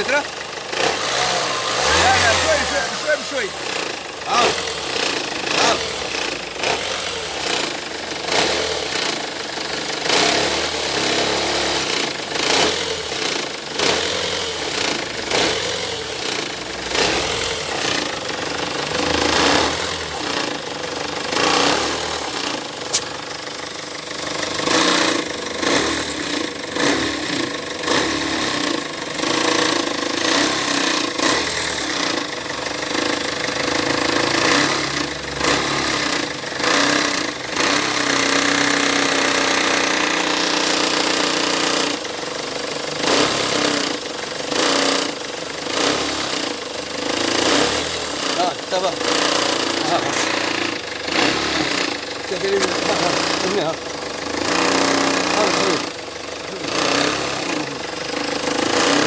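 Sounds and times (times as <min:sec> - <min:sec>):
diesel engine clattering knock: 0:47.6 - 0:59.0.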